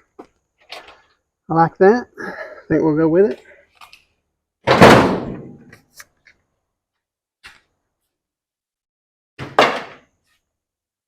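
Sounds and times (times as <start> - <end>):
loud clunk: 4.7 - 5.6.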